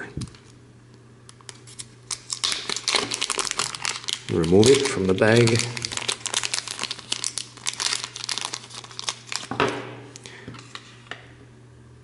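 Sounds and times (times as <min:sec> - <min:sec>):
plastic bag crinkling: 0:01.7 - 0:09.6.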